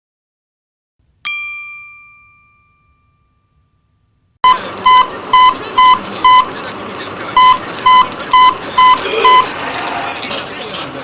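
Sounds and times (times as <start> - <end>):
bell-like ding: 1.2 - 4.2
electronic beeps: 4.4 - 6.6, 7.4 - 9.5.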